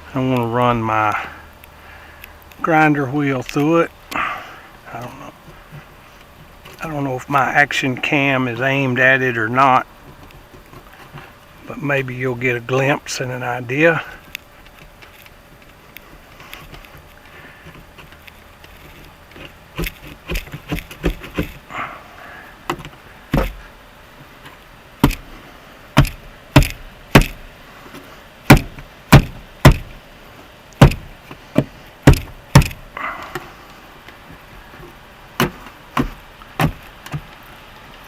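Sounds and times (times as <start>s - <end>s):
sharp knocks: 22.7s - 23.6s, 25.0s - 25.3s, 26.0s - 27.5s, 28.5s - 30.0s, 30.8s - 32.8s, 35.4s - 37.3s.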